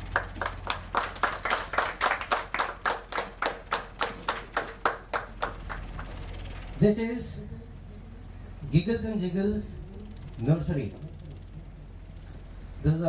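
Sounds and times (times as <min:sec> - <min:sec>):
hands clapping: 0:00.1 - 0:06.2.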